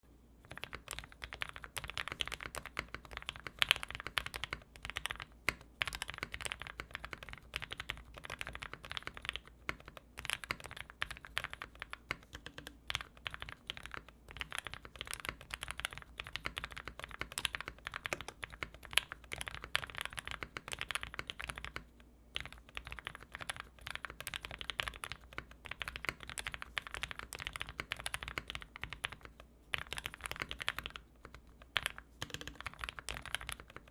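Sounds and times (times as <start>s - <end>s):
mechanical keyboard typing: 0.4s - 33.9s.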